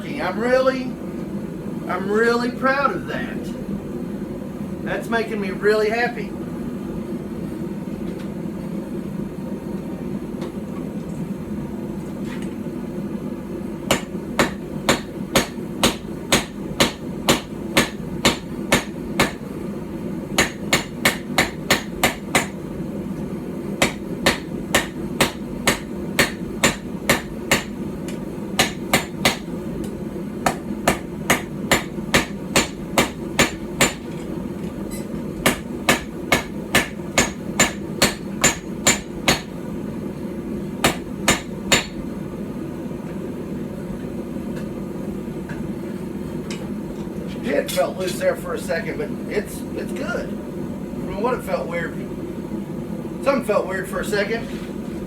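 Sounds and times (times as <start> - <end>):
low steady hum: 0.0 - 55.0
hammer striking steel on anvil: 13.9 - 19.4, 20.4 - 22.6, 23.8 - 29.5, 30.4 - 34.2, 35.0 - 39.5, 40.8 - 42.0.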